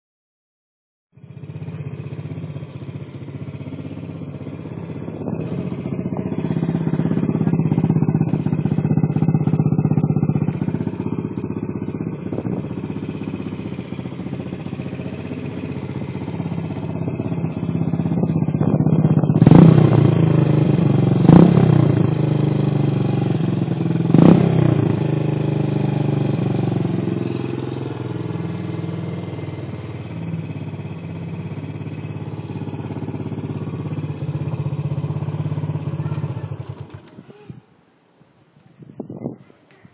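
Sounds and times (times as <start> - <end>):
motorcycle engine running and revving: 1.1 - 37.6.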